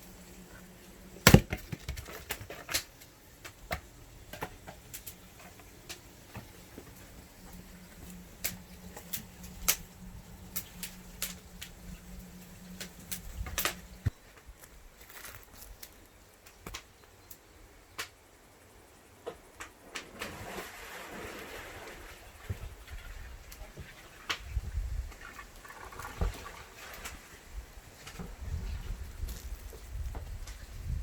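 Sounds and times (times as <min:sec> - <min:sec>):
axe chopping firewood: 0:01.2 - 0:02.8.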